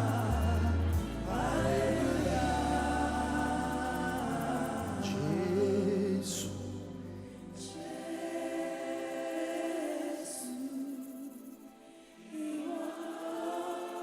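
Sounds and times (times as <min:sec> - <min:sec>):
low accompaniment: 0:00.0 - 0:08.0
choir singing gospel song: 0:00.0 - 0:14.0.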